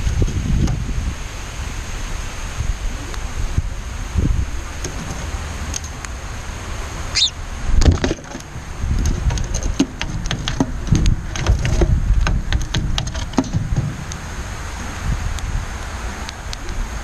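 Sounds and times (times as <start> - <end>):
low wind rumble: 0.0 - 17.0
bird chirp: 7.1 - 7.4.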